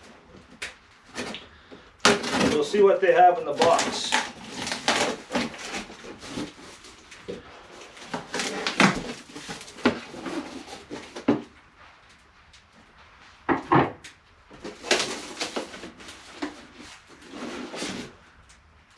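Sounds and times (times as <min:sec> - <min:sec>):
packaging scrapes and rustles: 0:00.0 - 0:11.6, 0:14.5 - 0:18.4
cardboard box being opened: 0:02.0 - 0:02.8, 0:03.5 - 0:11.6, 0:14.6 - 0:18.2.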